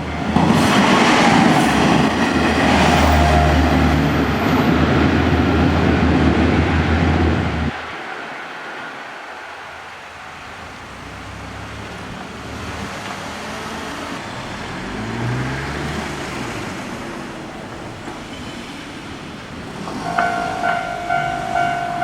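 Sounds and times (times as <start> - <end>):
road traffic rumbling: 0.0 - 22.0
vehicle engine revving: 11.3 - 17.5.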